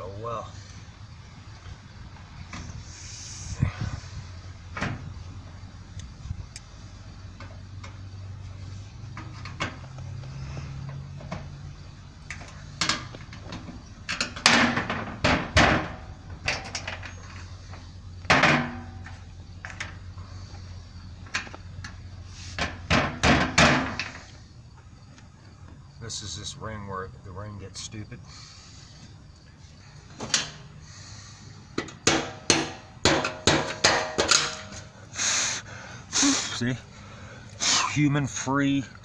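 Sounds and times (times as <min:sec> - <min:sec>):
hand tools knocking and clattering: 0:12.3 - 0:17.4, 0:18.2 - 0:20.0, 0:22.6 - 0:24.2, 0:31.8 - 0:34.9.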